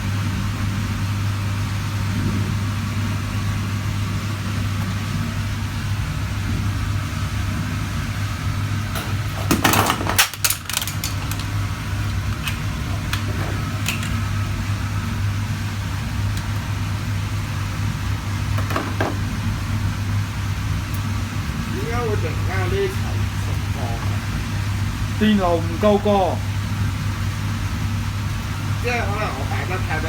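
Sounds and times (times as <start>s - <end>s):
refrigerator compressor hum: 0.0s - 30.0s
handling knocks and rattles: 8.9s - 14.3s.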